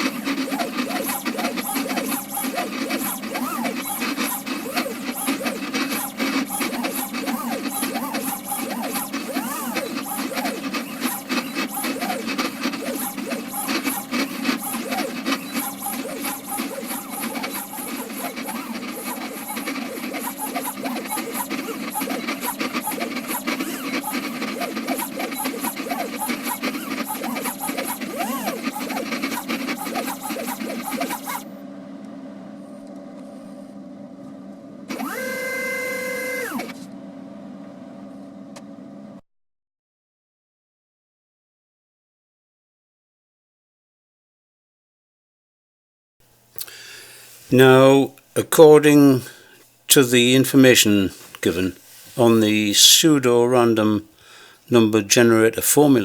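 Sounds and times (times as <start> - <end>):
stepper motors whining: 0.0 - 39.2.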